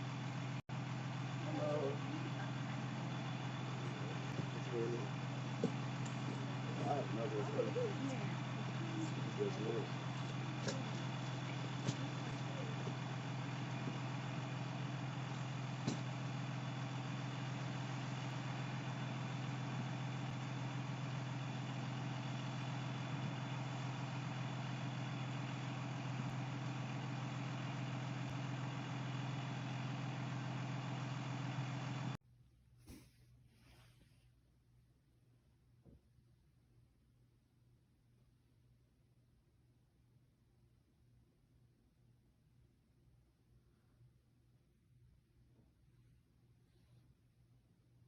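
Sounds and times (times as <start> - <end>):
low mechanical hum with hiss: 0.0 - 32.2.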